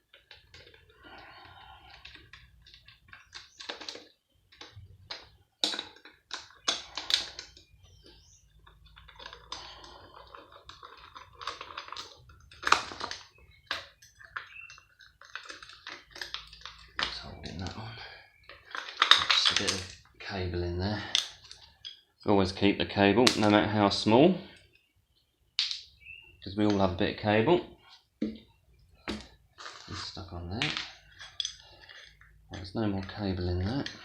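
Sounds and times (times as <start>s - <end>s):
metal tools clinking and scraping: 29.6s - 34.0s.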